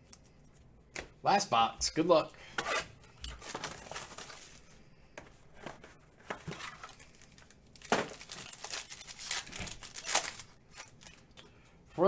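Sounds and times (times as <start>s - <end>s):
wrapper crinkling and tearing: 3.4s - 4.7s, 6.5s - 11.3s.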